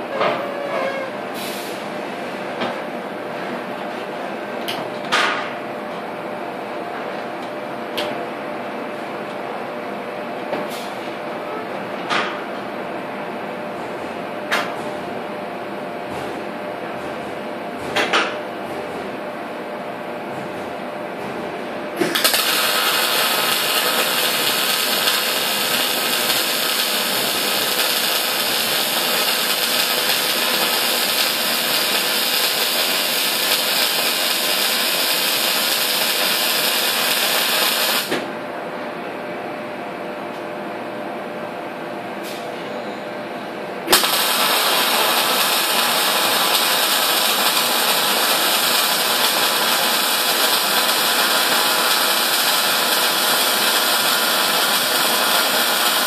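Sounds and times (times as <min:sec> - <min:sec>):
crackling welding arc: 0:22.1 - 0:38.1, 0:43.9 - 0:56.0.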